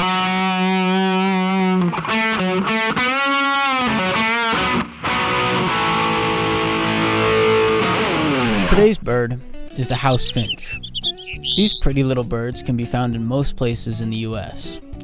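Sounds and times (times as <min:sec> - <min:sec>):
distorted electric guitar: 0:00.0 - 0:08.8.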